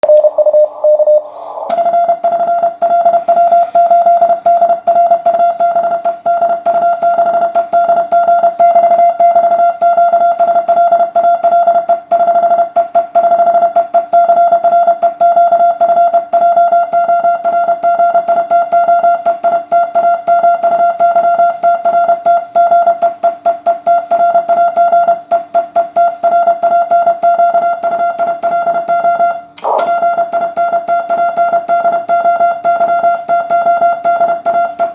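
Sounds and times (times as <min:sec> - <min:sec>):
morse code tone: 0:00.0 - 0:34.9
radio band noise hiss: 0:29.6 - 0:30.0.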